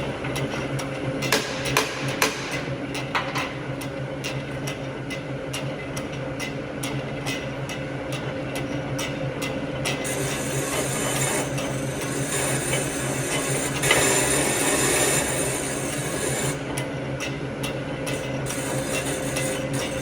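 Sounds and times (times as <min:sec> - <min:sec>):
cutting tool scraping metal: 0:10.0 - 0:16.6, 0:18.1 - 0:20.0
lathe motor hum: 0:10.0 - 0:20.0.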